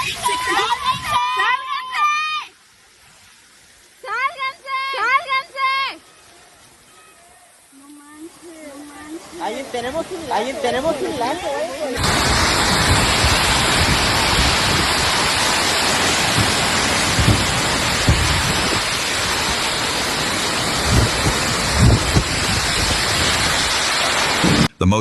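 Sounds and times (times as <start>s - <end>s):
torrential rain pouring: 0.0s - 24.7s
low thumps: 15.9s - 19.6s, 20.7s - 23.4s.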